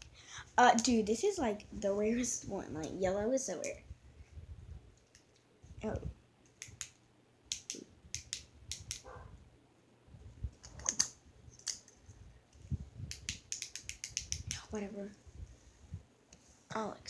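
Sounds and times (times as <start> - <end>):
sharp clicks and taps: 13.1 - 14.7.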